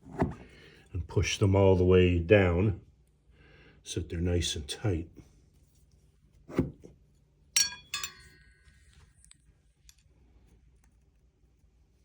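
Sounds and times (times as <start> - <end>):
metal bars clinking: 7.6 - 9.0.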